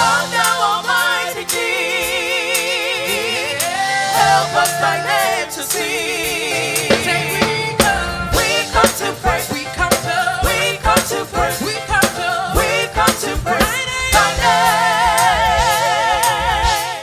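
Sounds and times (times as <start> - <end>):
person singing gospel: 0.0 - 17.0
drum hits: 6.3 - 17.0.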